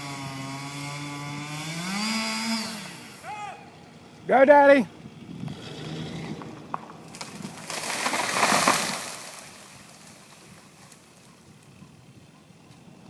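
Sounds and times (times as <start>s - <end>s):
tree trunk cracking: 5.5s - 11.3s
crash of branches and leaves: 7.0s - 11.2s.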